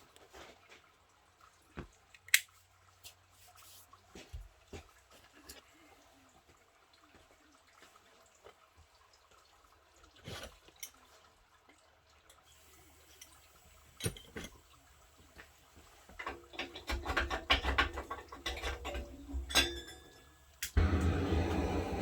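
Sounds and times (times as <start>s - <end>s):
hard objects clinking and clattering: 16.2s - 20.9s
steady rumbling hiss: 20.4s - 22.0s.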